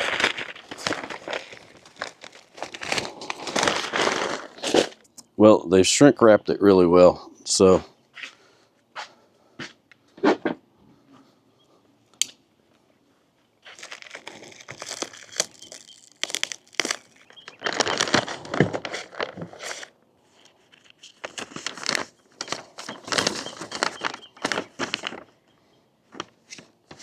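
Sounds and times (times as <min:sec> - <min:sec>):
plastic shrink wrap crinkling: 0:00.0 - 0:05.2, 0:13.6 - 0:25.4.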